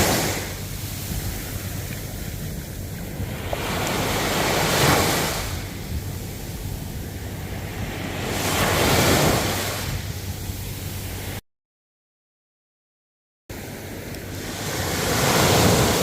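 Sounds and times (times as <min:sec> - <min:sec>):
ocean waves washing in: 0:00.0 - 0:11.4, 0:13.5 - 0:16.0
wind rumble on microphone: 0:00.0 - 0:11.4, 0:13.5 - 0:16.0.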